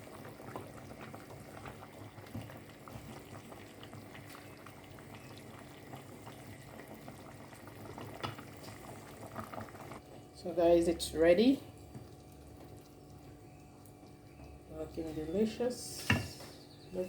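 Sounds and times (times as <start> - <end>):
sauce bubbling and popping: 0.0 - 10.1, 11.7 - 14.7.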